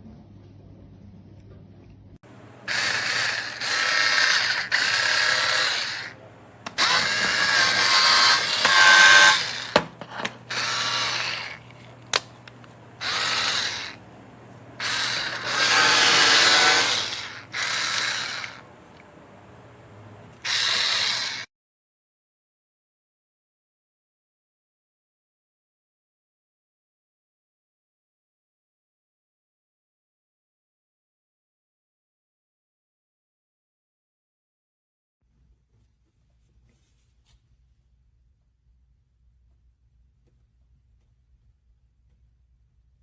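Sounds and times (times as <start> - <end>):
electric screwdriver whining: 2.7 - 14.0, 14.8 - 19.0, 20.3 - 21.5.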